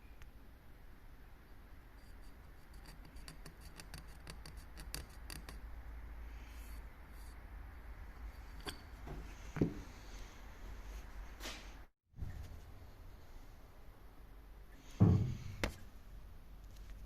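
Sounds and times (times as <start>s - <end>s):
soft rustle: 8.0s - 13.6s.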